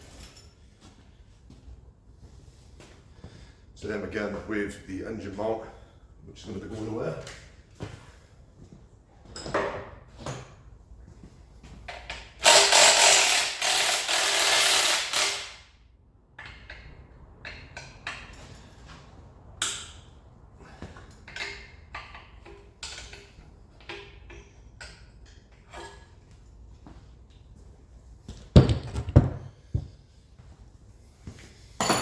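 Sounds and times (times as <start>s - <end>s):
ratchet wrench clicking: 12.4s - 15.6s.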